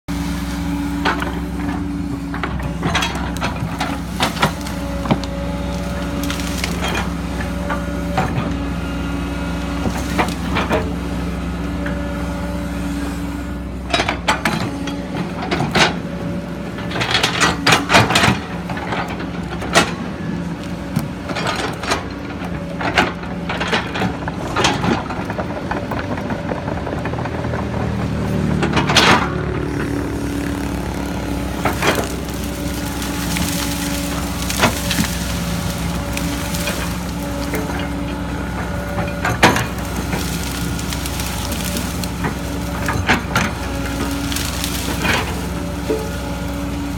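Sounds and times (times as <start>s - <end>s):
excavator diesel engine running: 0.0s - 46.9s
sharp knocks and cracks: 28.6s - 46.9s.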